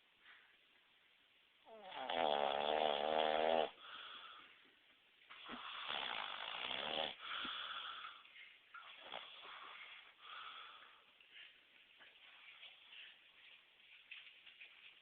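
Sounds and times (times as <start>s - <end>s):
man snoring loudly: 1.7s - 3.8s, 5.8s - 7.2s
breathy exhale: 7.2s - 8.2s, 9.4s - 11.0s.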